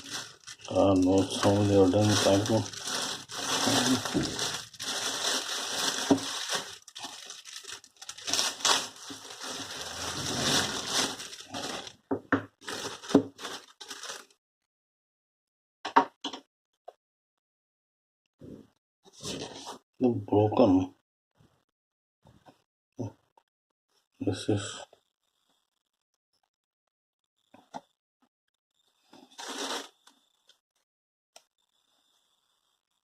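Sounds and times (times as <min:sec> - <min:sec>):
packaging crinkling and rustling: 0:00.0 - 0:14.4, 0:29.2 - 0:30.0.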